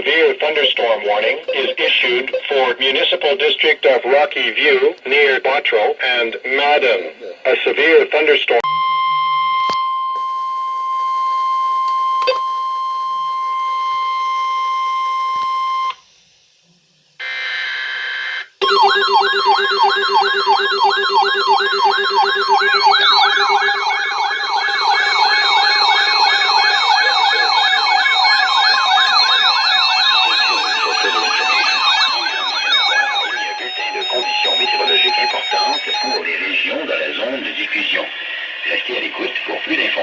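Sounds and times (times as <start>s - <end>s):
steady alert tone: 18.6s - 36.2s
wailing siren-like alarm: 18.6s - 36.3s.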